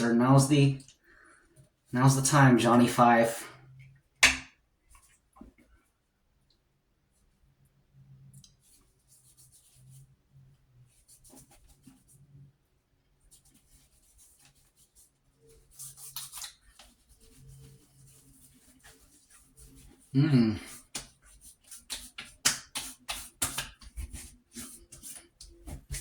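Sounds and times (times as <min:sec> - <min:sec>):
hands rubbing and patting skin: 0:11.0 - 0:12.1, 0:13.3 - 0:26.0.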